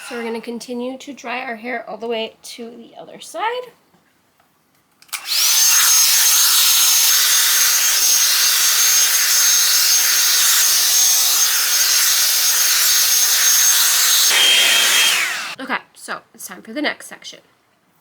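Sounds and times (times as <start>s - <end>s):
blow-dryer motor whine: 5.2s - 15.6s.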